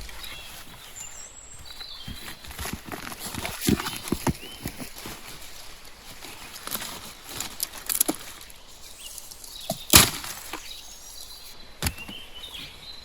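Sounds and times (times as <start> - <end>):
loud crack: 0.0 - 0.9
sharp snaps and knocks: 6.6 - 10.7.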